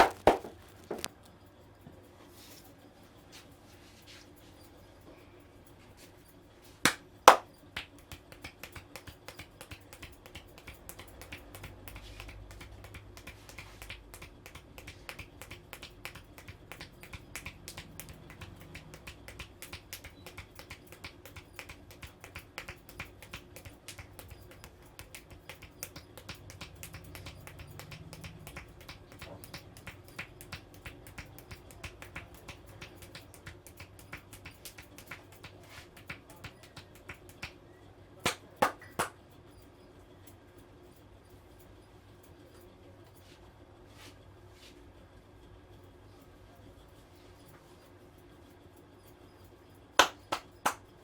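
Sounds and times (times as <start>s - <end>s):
hands tapping and slapping head: 0.0s - 1.1s, 6.9s - 37.6s, 38.2s - 39.2s, 50.0s - 50.8s.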